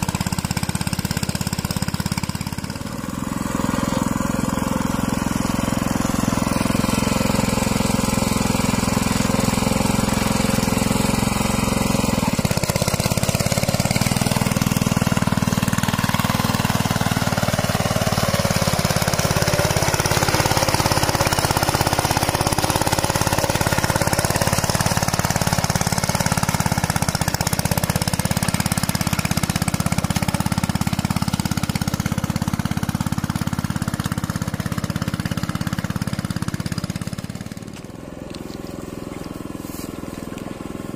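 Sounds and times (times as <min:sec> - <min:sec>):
diesel engine knocking chug: 0:00.0 - 0:37.8.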